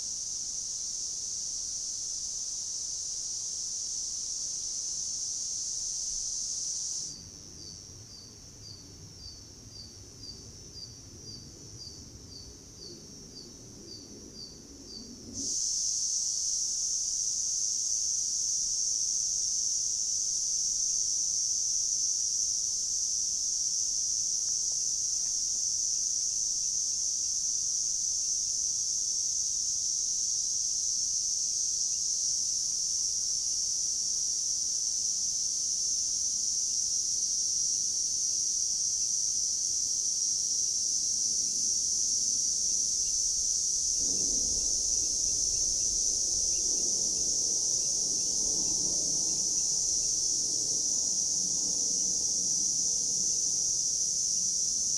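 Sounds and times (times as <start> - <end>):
high-pitched insect drone: 15.4 - 54.9.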